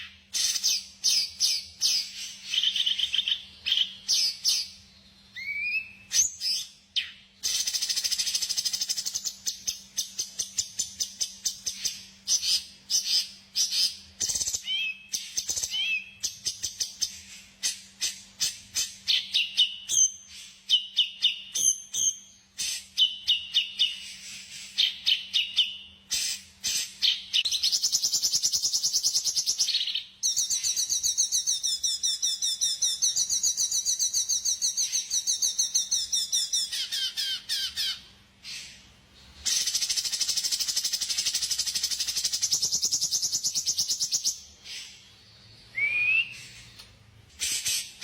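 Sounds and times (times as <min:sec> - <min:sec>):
faint steady hum: 0:00.0 - 0:48.0
high whistled bird phrases: 0:05.4 - 0:09.3, 0:45.7 - 0:46.8.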